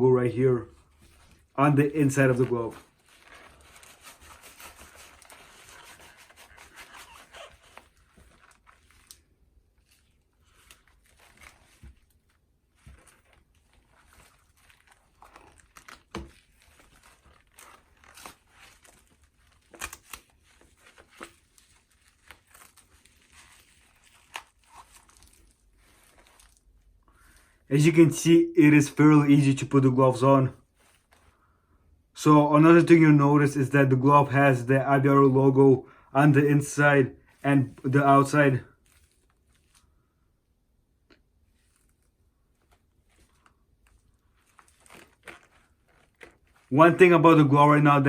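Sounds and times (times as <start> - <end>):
soft rustles and clicks: 0.7 - 27.6, 30.6 - 31.6, 37.3 - 40.2, 40.9 - 47.1
gloves rubbing and tearing: 0.7 - 28.2, 30.6 - 31.6, 36.2 - 48.0.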